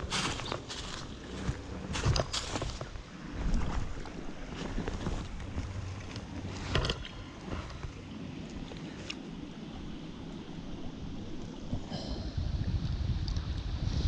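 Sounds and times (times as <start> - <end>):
small stream running: 0.0 - 14.0.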